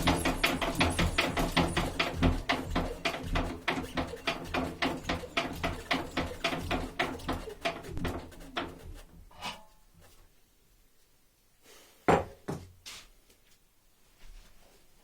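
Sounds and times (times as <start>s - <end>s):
engine running with knocking: 0.0s - 9.0s.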